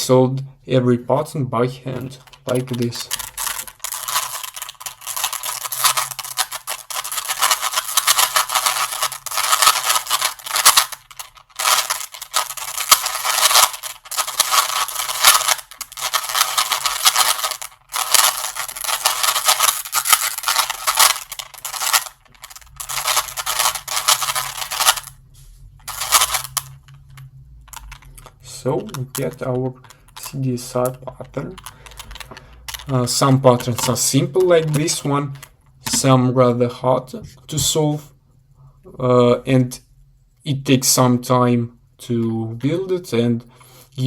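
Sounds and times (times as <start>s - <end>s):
puzzle cube clicking and scraping: 1.9s - 25.2s, 25.8s - 36.1s.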